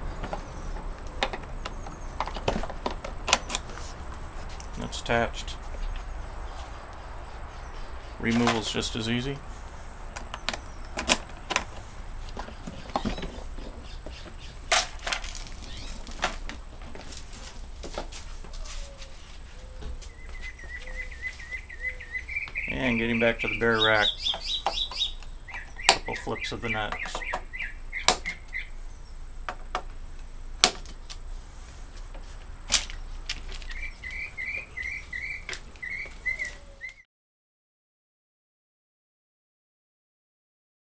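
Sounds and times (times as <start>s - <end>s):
bird chirping: 0.0s - 31.2s, 32.3s - 37.0s
plastic case clicks and knocks: 30.6s - 31.0s.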